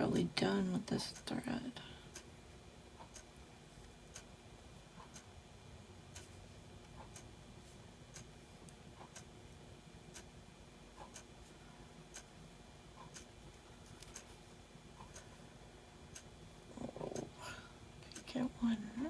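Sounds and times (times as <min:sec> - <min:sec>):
clock ticking: 0:00.0 - 0:02.3, 0:03.0 - 0:03.3, 0:04.1 - 0:05.4, 0:06.1 - 0:07.4, 0:08.0 - 0:09.3, 0:10.0 - 0:10.3, 0:10.9 - 0:11.3, 0:12.0 - 0:13.4, 0:14.0 - 0:15.4, 0:16.0 - 0:17.3
low room hum: 0:00.0 - 0:19.0.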